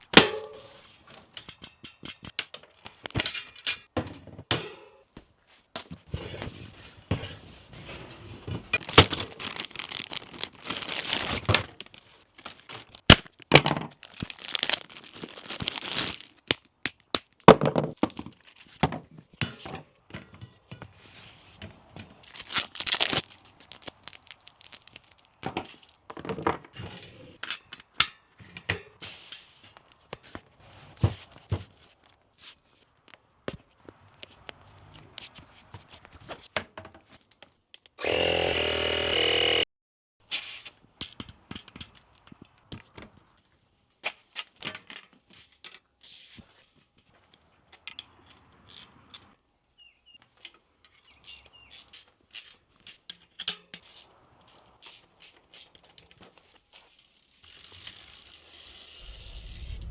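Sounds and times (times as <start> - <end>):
clicks and knocks on bicycle wheel: 0.0 - 6.0, 41.0 - 43.2, 50.3 - 59.0.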